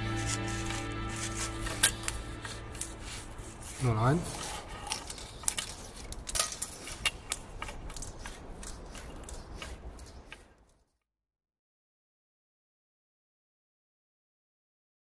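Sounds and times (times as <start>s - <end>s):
grinder clicks and rasping: 0.0s - 10.9s.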